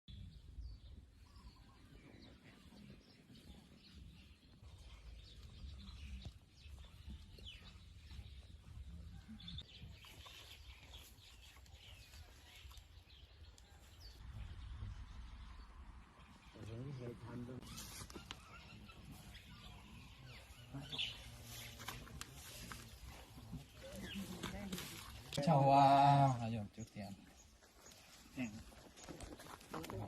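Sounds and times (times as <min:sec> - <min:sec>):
bird chirps: 0:00.1 - 0:24.8
steady low rumble: 0:14.1 - 0:16.8.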